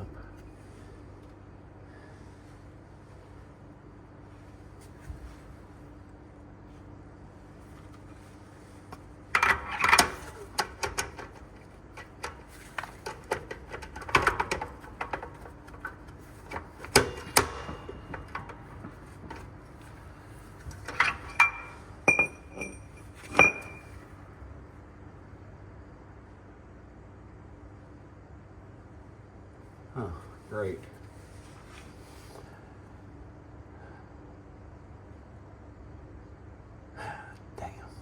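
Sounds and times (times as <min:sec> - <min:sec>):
truck transmission clanking: 0:09.4 - 0:24.0.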